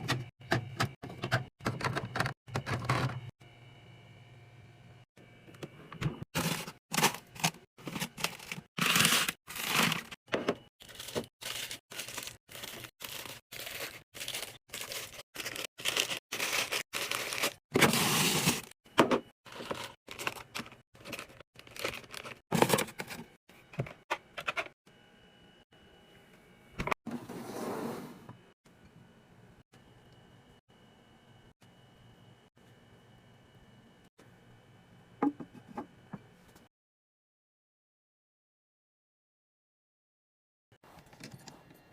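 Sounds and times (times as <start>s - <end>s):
clattering and crinkling packaging: 6.4s - 24.7s
packaging rustle: 10.8s - 18.6s, 19.5s - 22.9s.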